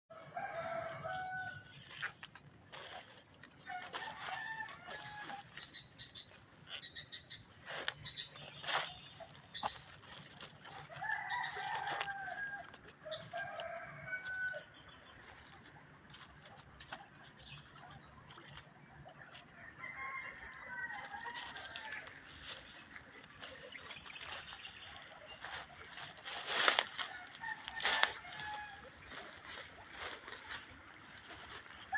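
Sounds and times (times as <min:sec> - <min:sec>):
roosters crowing: 0:00.1 - 0:02.0, 0:02.7 - 0:05.9, 0:09.5 - 0:15.5, 0:19.3 - 0:23.5, 0:24.2 - 0:31.9.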